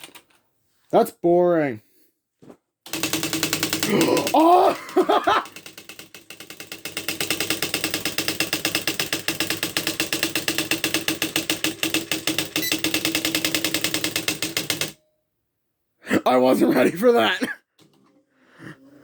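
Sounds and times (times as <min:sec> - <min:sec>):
typewriter character strikes: 0:02.9 - 0:15.0.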